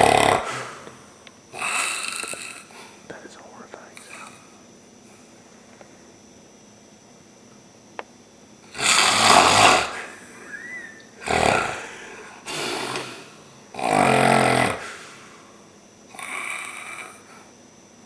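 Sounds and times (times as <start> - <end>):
man snoring loudly: 0.0 - 0.9, 1.5 - 2.8, 8.7 - 10.2, 11.2 - 15.3, 16.1 - 17.3.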